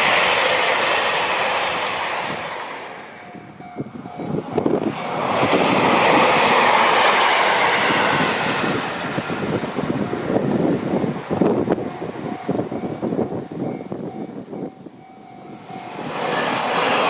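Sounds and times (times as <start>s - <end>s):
train passing at speed: 0.0s - 17.0s
crossing warning bell ringing: 2.9s - 5.0s, 9.8s - 17.0s.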